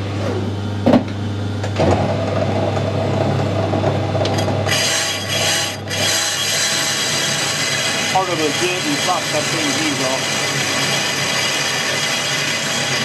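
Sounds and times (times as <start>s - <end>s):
metal lathe humming: 4.2s - 13.0s.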